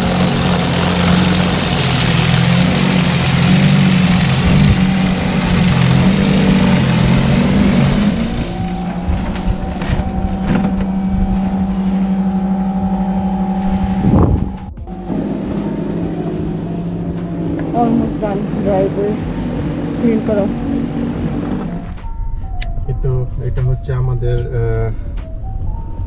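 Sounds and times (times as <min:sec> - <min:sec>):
snow blower engine running: 0:00.0 - 0:14.2.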